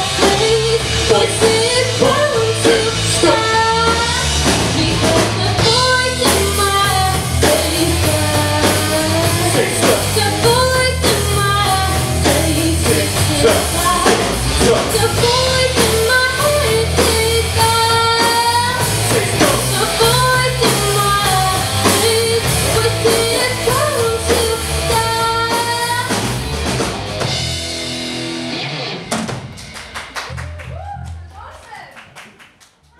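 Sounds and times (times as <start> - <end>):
person singing: 0.0 - 26.2
rock band playing live: 0.0 - 31.1.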